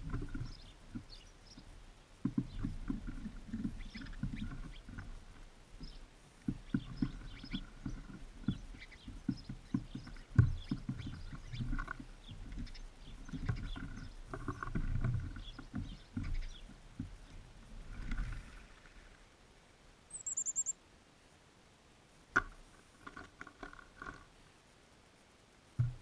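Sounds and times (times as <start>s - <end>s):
beaks tapping on bird feeder: 5.8s - 16.8s
faint high bird chirps: 20.1s - 20.8s.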